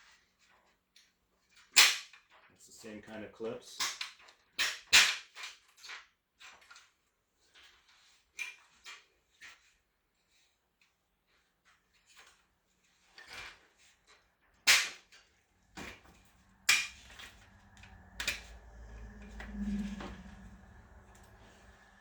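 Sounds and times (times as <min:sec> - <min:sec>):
low rumble: 0:15.5 - 0:22.0.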